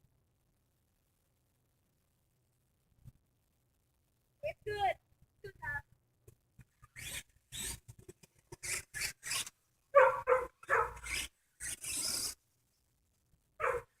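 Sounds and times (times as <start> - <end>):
dog barking: 9.9 - 11.1, 13.6 - 14.0.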